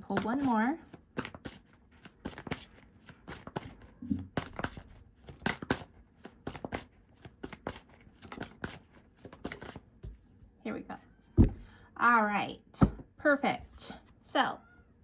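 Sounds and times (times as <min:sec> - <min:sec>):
cards being shuffled: 0:00.2 - 0:09.9.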